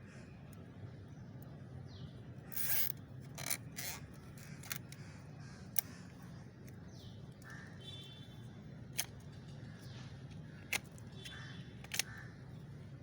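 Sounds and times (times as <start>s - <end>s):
sharp tool clicks: 10.7s - 12.2s.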